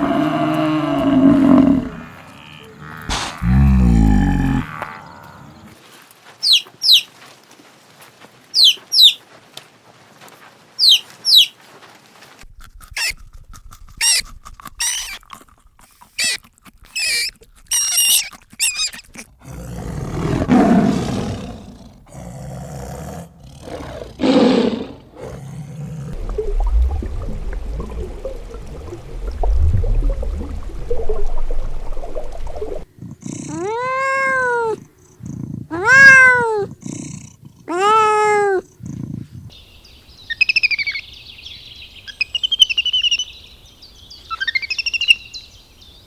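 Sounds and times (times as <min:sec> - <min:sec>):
low rough animal calls: 0:00.0 - 0:05.8, 0:26.1 - 0:39.6
high animal chirps: 0:06.4 - 0:07.1, 0:08.6 - 0:09.2, 0:10.8 - 0:11.5, 0:13.0 - 0:13.2, 0:14.8 - 0:15.2, 0:16.2 - 0:16.4, 0:17.0 - 0:19.1, 0:39.5 - 0:43.4, 0:44.2 - 0:45.5.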